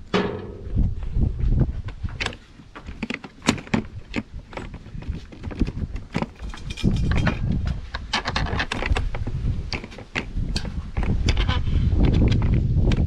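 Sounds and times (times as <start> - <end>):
low rumble: 0.0 - 2.1
metal hardware clinking: 6.1 - 7.4.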